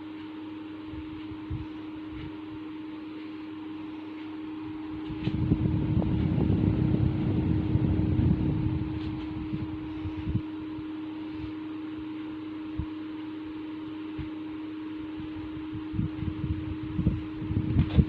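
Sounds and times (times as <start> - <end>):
electric fan motor hum: 0.0 - 18.0
wind rumble on microphone: 0.9 - 2.6, 4.9 - 10.9, 15.1 - 18.0.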